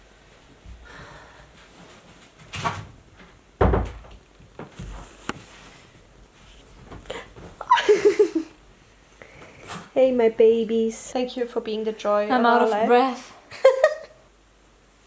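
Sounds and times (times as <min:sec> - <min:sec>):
knocks and thumps: 0:02.4 - 0:05.0.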